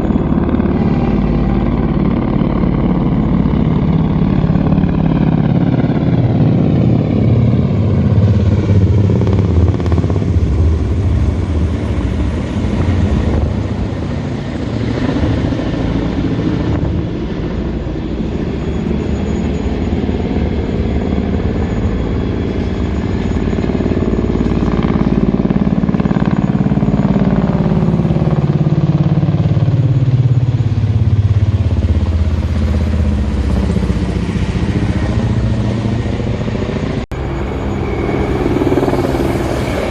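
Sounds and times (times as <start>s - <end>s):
helicopters flying overhead: 0.0s - 39.9s.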